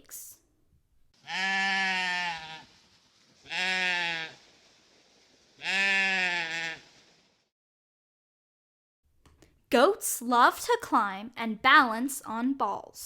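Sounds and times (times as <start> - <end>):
goat bleating: 1.2 - 2.7, 3.4 - 4.4, 5.6 - 6.8.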